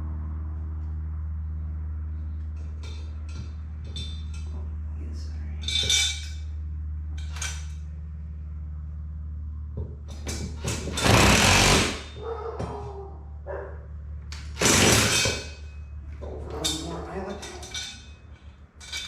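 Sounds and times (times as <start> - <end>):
impact driver running: 10.1 - 12.2, 14.4 - 15.6.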